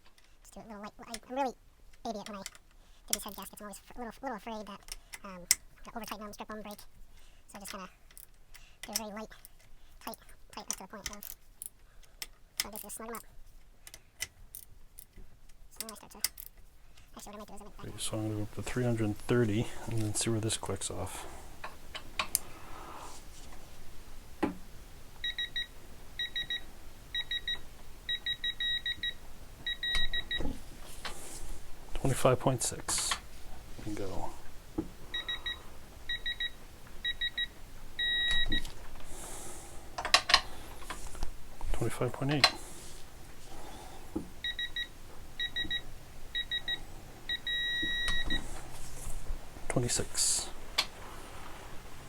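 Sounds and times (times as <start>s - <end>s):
torque meter beeping: 25.2s - 30.5s, 35.1s - 38.7s, 44.4s - 48.5s.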